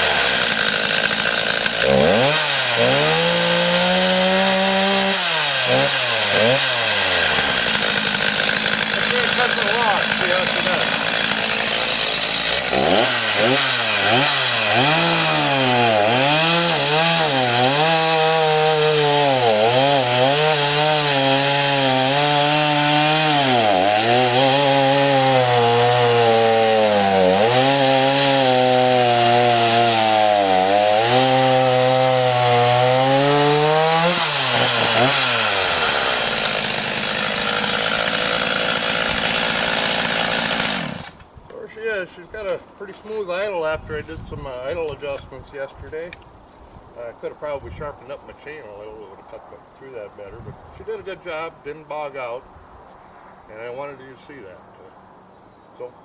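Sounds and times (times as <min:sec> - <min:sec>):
chainsaw cutting through wood: 0:00.0 - 0:41.3.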